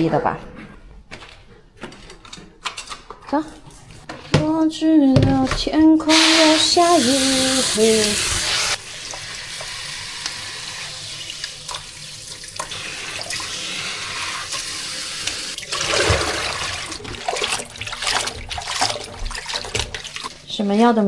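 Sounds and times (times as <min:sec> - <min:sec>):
tap water running into sink: 0:06.1 - 0:20.3.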